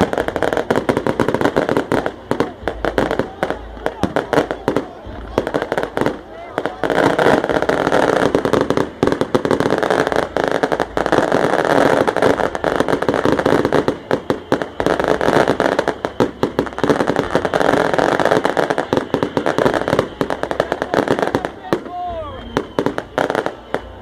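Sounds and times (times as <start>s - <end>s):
dense crackling pops: 0.0s - 24.0s.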